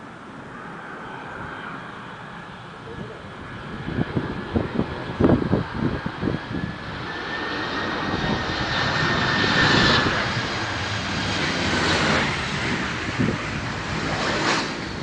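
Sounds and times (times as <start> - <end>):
jet engines roaring with whine: 0.0 - 15.0.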